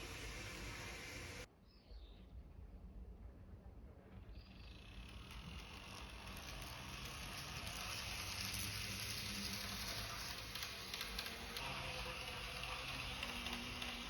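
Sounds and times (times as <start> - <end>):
model train motor whirring: 0.0 - 1.5, 4.4 - 14.0.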